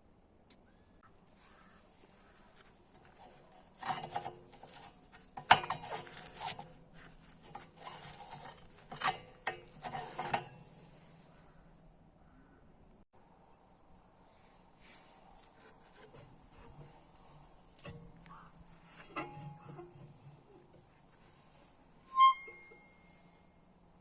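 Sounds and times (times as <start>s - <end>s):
scraping and rubbing on steel: 1.4s - 11.6s, 14.8s - 23.8s.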